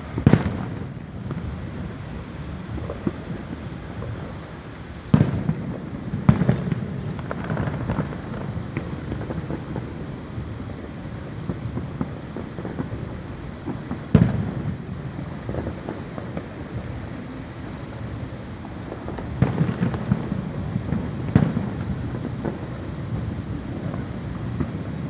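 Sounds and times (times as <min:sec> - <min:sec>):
firework shells booming: 0:00.0 - 0:25.0
crackling pops: 0:05.1 - 0:10.6, 0:15.4 - 0:17.1, 0:18.6 - 0:25.0.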